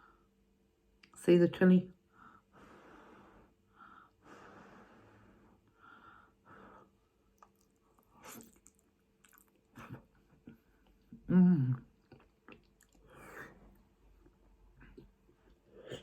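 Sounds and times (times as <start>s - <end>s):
chewing and mouth sounds: 7.3s - 11.2s, 11.9s - 15.2s.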